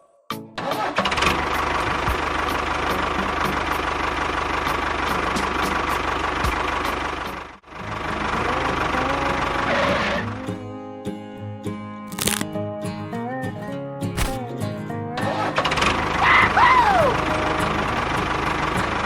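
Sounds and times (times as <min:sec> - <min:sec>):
small engine idling: 0:00.9 - 0:10.6, 0:15.5 - 0:19.0.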